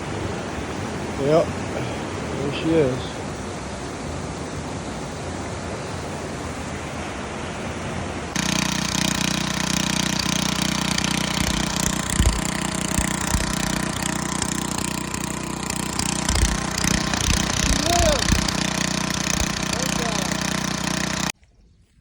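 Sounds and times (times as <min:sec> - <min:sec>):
rushing river water: 0:00.0 - 0:08.4
small gasoline engine running: 0:08.3 - 0:21.4.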